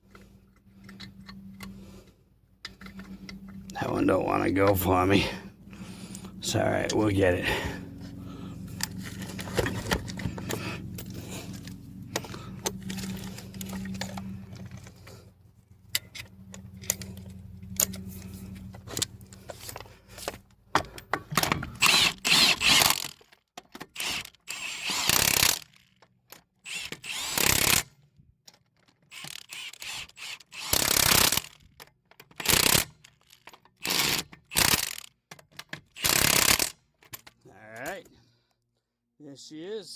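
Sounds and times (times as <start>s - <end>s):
steady low hum: 0.0s - 22.8s
impact wrench hammering: 36.0s - 36.7s.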